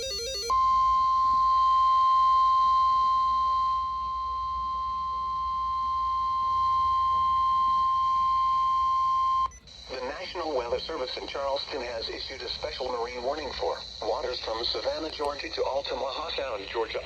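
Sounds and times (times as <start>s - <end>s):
steady high alarm tone: 0.0s - 11.9s.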